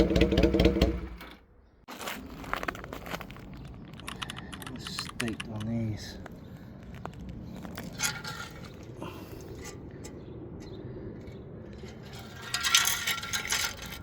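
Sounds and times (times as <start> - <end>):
metallic clinks and rattles: 11.7 - 14.0.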